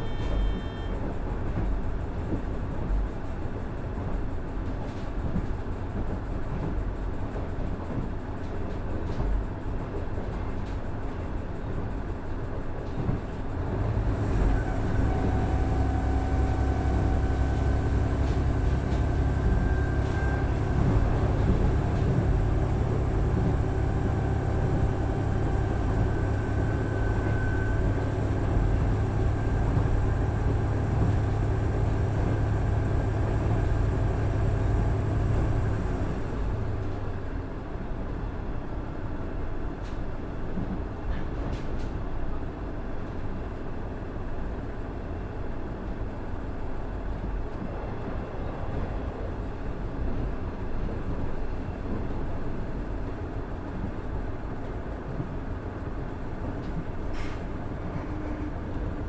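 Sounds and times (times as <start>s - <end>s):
diesel railcar engine: 0.0s - 59.0s
rail noise: 0.0s - 59.0s.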